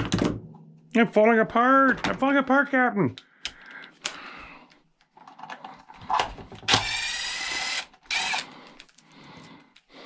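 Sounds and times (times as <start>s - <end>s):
clicks and knocks of parts handled: 3.2s - 7.0s, 7.9s - 9.9s
power driver whine: 6.7s - 8.5s.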